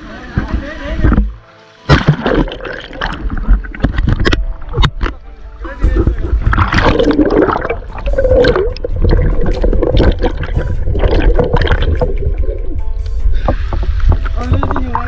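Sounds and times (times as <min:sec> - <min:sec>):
water splashing and gurgling: 0:00.0 - 0:15.0
low rumble: 0:05.8 - 0:15.0.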